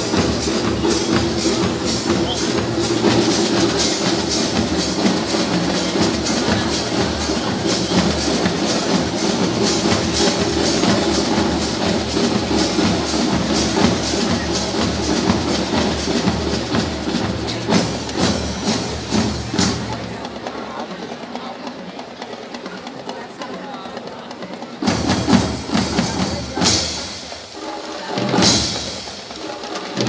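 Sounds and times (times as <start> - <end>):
sustained brass notes: 0.0 - 19.6
drums keeping a steady beat: 0.0 - 30.0.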